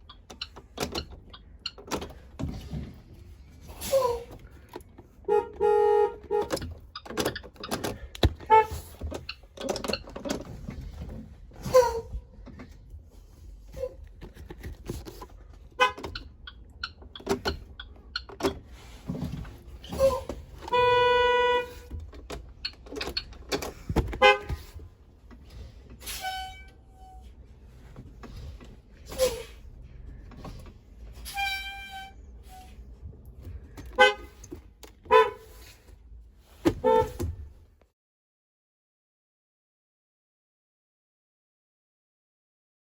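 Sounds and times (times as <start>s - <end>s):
school bus horns tooting: 3.6s - 6.9s, 8.4s - 9.0s, 11.6s - 12.2s, 15.8s - 16.3s, 19.8s - 22.2s, 24.1s - 24.8s, 26.0s - 27.4s, 31.1s - 32.9s, 33.8s - 35.8s, 36.7s - 37.5s.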